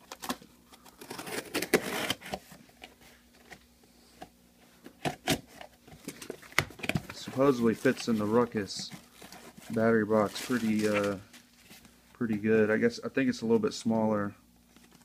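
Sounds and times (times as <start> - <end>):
packaging rustling and scraping: 0.0 - 3.7, 4.8 - 12.5.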